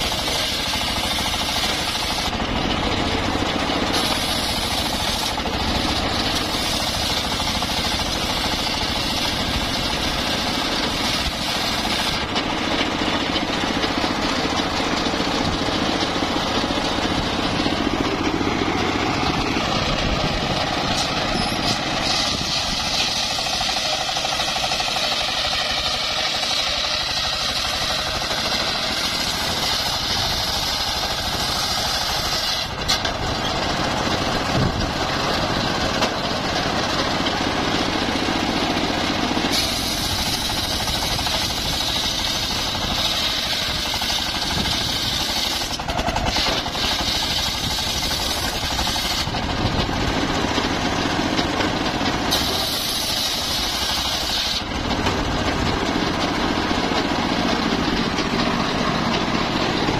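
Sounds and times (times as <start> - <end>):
saw blade cutting hiss: 0.0 - 2.4, 3.9 - 12.3, 20.8 - 33.0, 39.4 - 49.4, 52.3 - 54.7
sawmill machine drone: 0.0 - 59.9.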